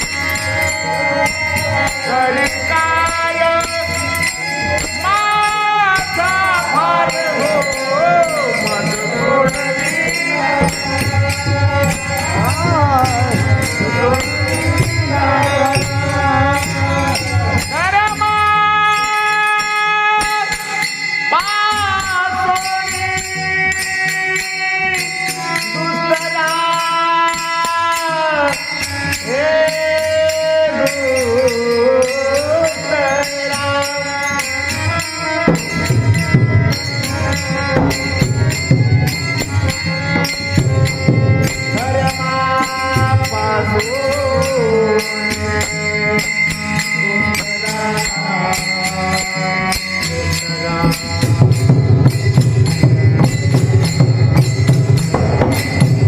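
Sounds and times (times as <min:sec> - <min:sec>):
man singing long notes: 0:00.0 - 0:54.4
small hand cymbals: 0:00.0 - 0:56.0
drum beating: 0:02.4 - 0:19.2, 0:35.4 - 0:44.6, 0:50.5 - 0:56.0.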